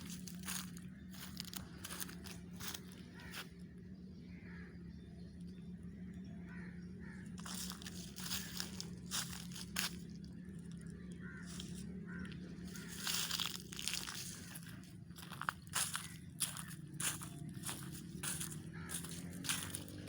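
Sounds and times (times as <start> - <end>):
footsteps crunching through dry leaves: 0.0 - 3.6, 6.5 - 20.0
steady low hum: 0.0 - 20.0.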